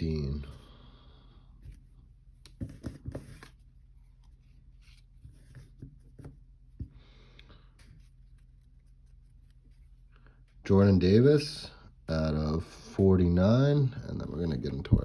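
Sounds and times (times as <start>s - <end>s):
trading cards being handled: 1.6s - 7.0s.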